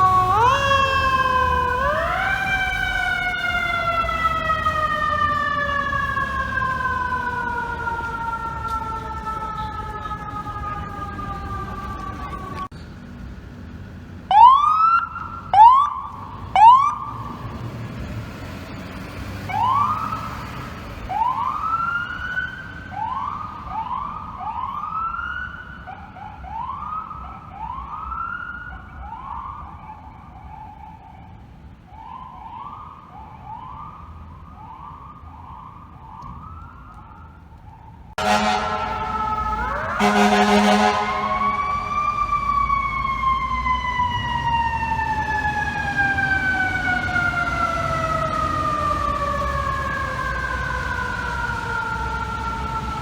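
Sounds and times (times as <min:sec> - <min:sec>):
loud horn: 0:38.2 - 0:42.3
electronic siren sweeping: 0:38.2 - 0:53.0.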